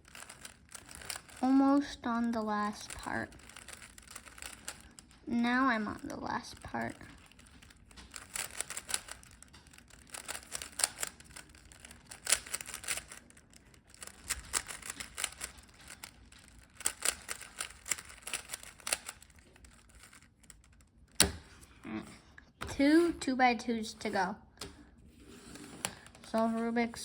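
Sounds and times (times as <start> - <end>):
puzzle cube plastic clicks: 0.0 - 21.6.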